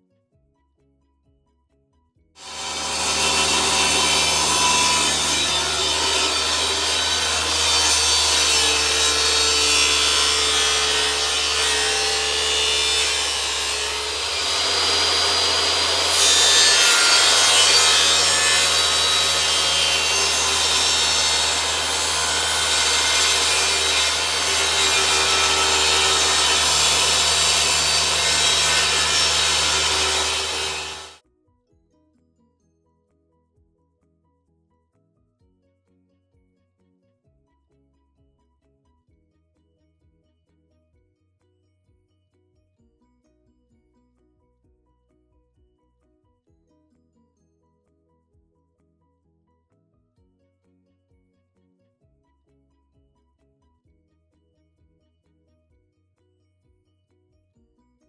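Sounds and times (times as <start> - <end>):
power tool rasping on surface: 2.4 - 31.2.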